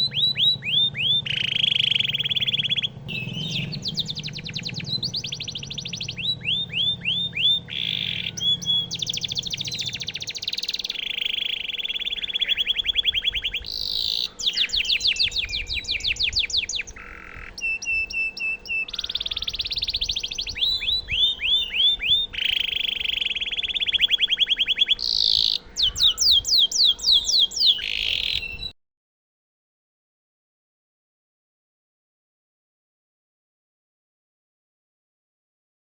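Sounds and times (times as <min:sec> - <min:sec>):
canary singing trills: 0:00.0 - 0:28.8.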